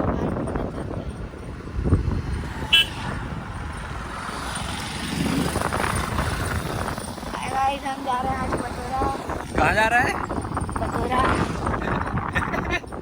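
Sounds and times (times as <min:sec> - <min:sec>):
road vehicle noise: 0:00.0 - 0:13.0.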